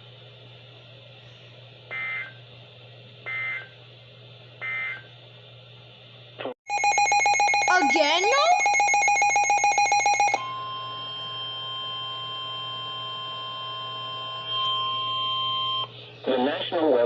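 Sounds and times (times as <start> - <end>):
faint hum and hiss: 0.0 - 6.6, 10.3 - 17.0
buzzing alarm tone: 6.7 - 16.0.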